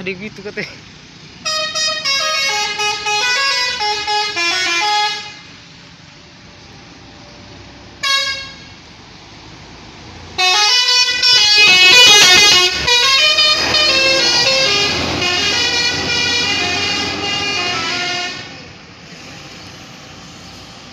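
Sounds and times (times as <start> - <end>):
bus musical horn tune: 1.4 - 5.5, 8.0 - 8.8, 10.4 - 18.7.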